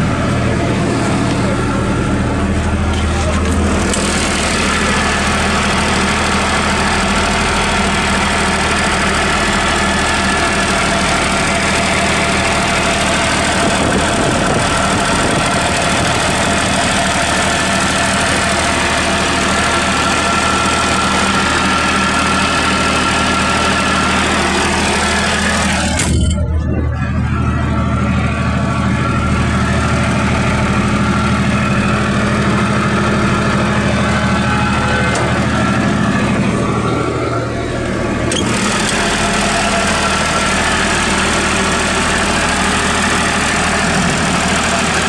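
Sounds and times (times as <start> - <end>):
low hum: 0.0 - 4.0, 24.2 - 38.6
diesel generator running: 0.0 - 45.0.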